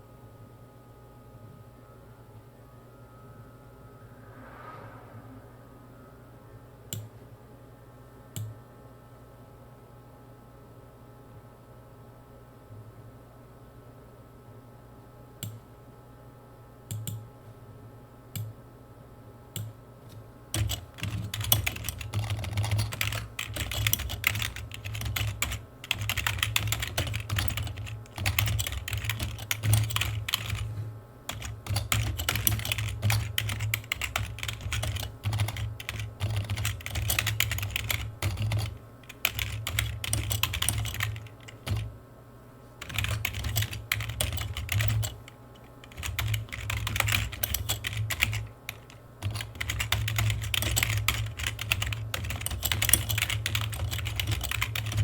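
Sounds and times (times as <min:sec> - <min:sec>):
keyboard typing: 0:20.6 - 0:30.7, 0:31.3 - 0:41.9, 0:42.8 - 0:55.0.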